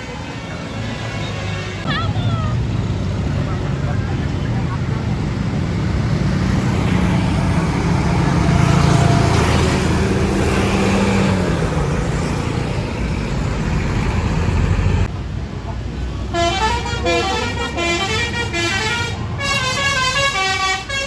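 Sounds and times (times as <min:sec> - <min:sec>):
road traffic noise: 0:00.0 - 0:21.0
vehicle engine running: 0:01.9 - 0:15.2.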